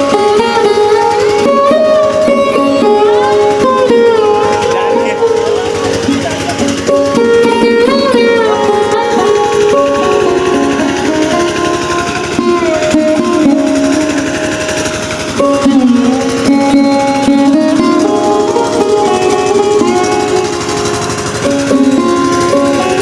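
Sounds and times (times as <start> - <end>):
plucked strings slow melody: 0.0 - 23.0.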